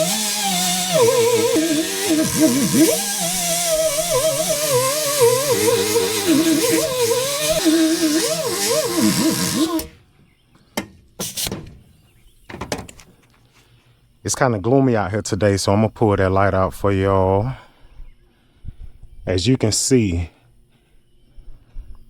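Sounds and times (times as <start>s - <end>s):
tire buffer grinding: 0.0s - 10.0s.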